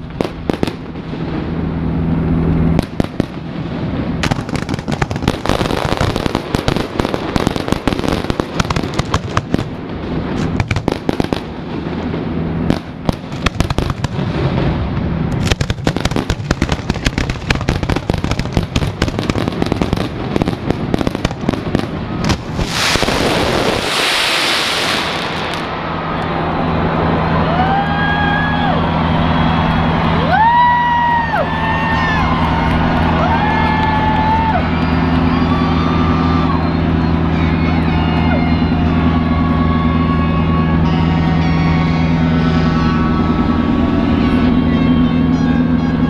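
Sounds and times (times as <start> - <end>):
fireworks bursts: 0.0 - 27.2, 31.6 - 46.0
fireworks hissing: 22.1 - 25.9.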